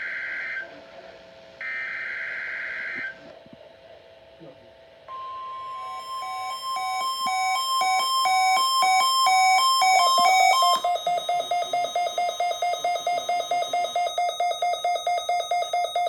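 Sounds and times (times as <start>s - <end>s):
electronic alarm tones: 5.1s - 16.0s.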